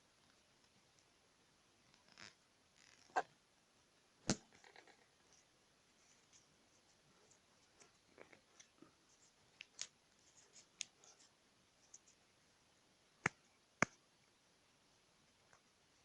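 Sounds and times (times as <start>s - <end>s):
cord rubbing: 2.0s - 3.3s.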